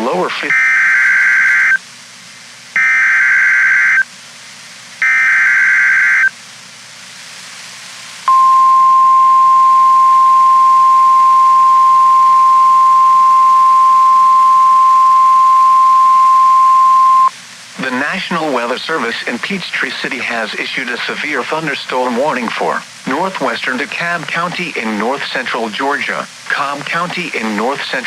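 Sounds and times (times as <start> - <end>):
short data bursts: 2.8 - 4.0, 5.0 - 6.3
steady warning alarm tone: 2.8 - 4.0, 5.0 - 6.3, 8.3 - 17.3.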